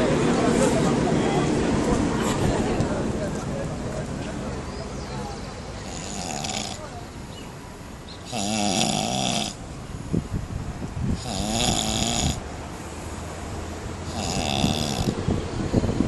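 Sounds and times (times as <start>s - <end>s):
person snoring: 5.8s - 6.9s, 8.3s - 9.6s, 11.2s - 12.4s, 14.0s - 15.2s.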